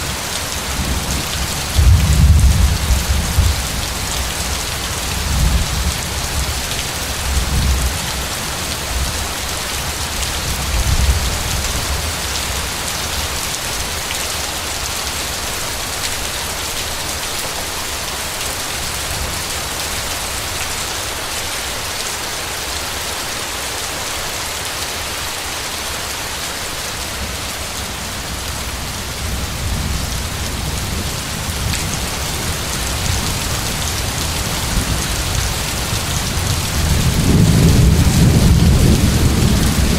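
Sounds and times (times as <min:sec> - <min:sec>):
heavy rain: 0:00.0 - 0:39.9.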